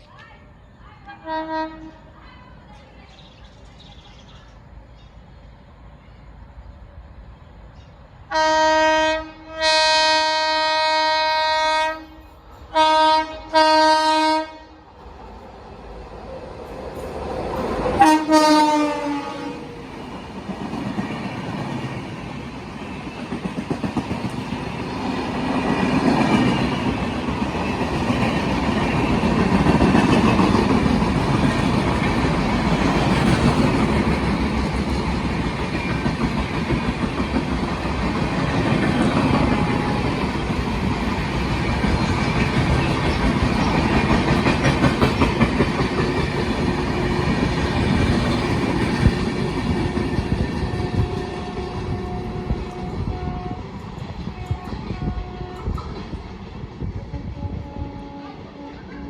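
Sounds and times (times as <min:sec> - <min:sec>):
train horn blast: 0:01.2 - 0:02.1, 0:08.3 - 0:14.8, 0:18.0 - 0:19.8, 0:50.8 - 0:56.0, 0:57.1 - 0:59.0
train wheels rumbling on rails: 0:14.9 - 0:59.0.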